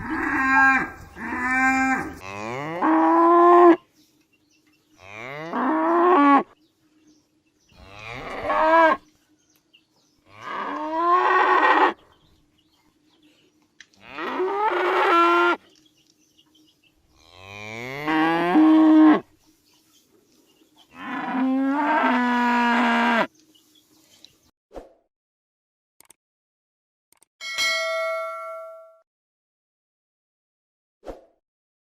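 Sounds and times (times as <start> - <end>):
cow mooing: 0.0 - 3.8, 7.8 - 9.0, 14.0 - 15.6, 17.2 - 19.2, 21.0 - 23.3.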